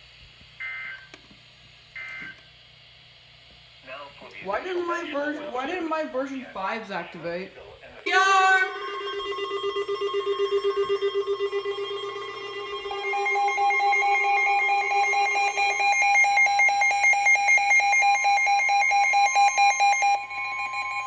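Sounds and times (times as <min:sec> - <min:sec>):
steady alarm tone: 0:04.5 - 0:07.2, 0:08.1 - 0:21.0
pulsing electronic beeps: 0:08.1 - 0:21.0.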